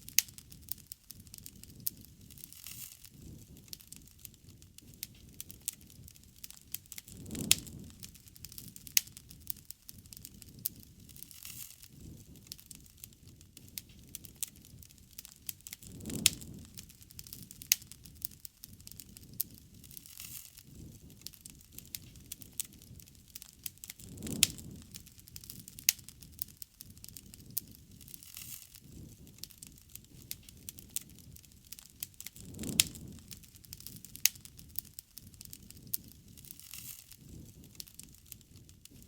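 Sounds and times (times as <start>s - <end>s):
campfire crackling and popping: 0.0s - 39.0s
low rumble of burning: 0.0s - 39.0s.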